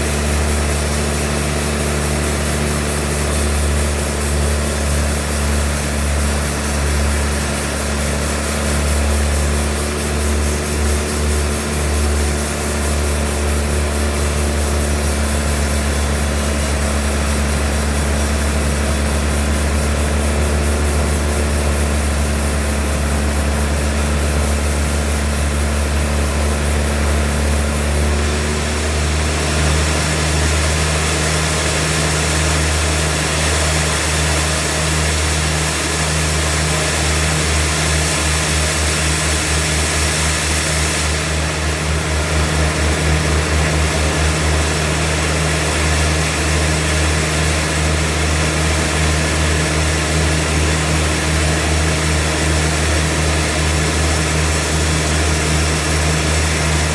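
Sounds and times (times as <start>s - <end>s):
continuous high hiss: 0.0s - 28.2s
sawmill machinery engine drone: 0.0s - 56.9s.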